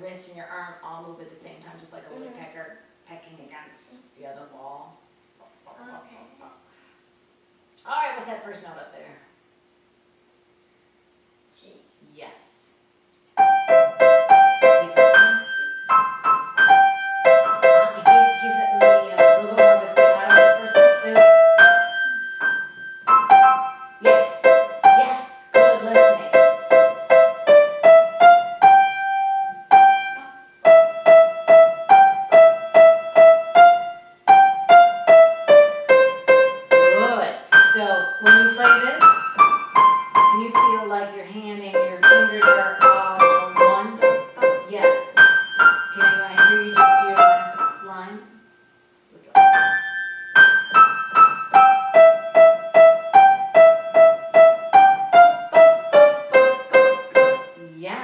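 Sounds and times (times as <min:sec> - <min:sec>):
simple piano melody: 0:13.3 - 0:48.6, 0:49.3 - 0:57.7.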